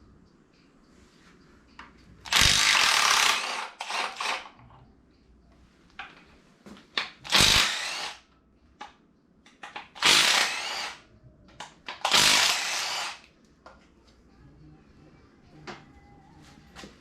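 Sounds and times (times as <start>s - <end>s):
impact wrench bursts: 2.3s - 4.5s, 7.3s - 8.2s, 10.0s - 11.0s, 12.0s - 13.2s.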